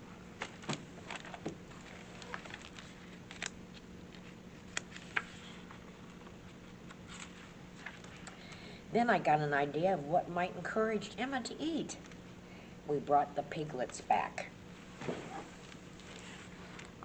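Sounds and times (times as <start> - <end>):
low electrical hum: 0.0 - 17.0
paper pages turning: 0.4 - 8.3, 15.6 - 17.0.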